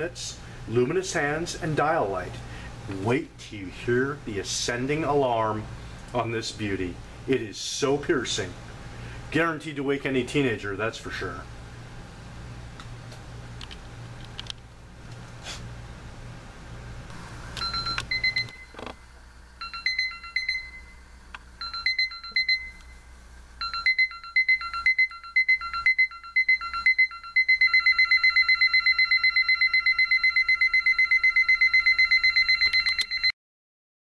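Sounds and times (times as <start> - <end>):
alarm clock beeping: 17.6 - 18.8, 19.6 - 21.0, 21.6 - 22.9, 23.6 - 33.4.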